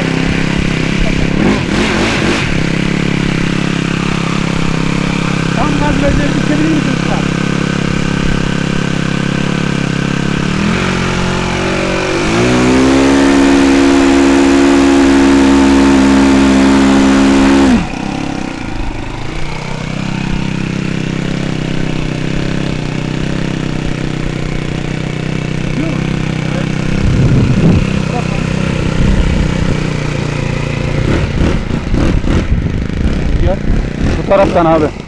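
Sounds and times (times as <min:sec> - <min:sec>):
model aircraft engine revving: 0:00.0 - 0:35.0.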